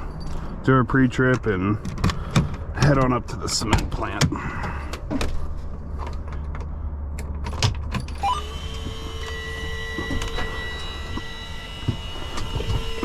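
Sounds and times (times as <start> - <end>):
low hum: 4.3 - 13.0
power inverter electronic whine: 8.0 - 13.0.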